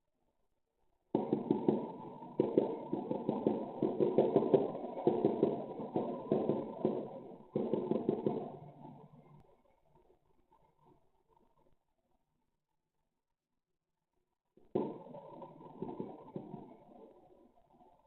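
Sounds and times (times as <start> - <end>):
rumbling booms from sky: 1.2 - 8.8.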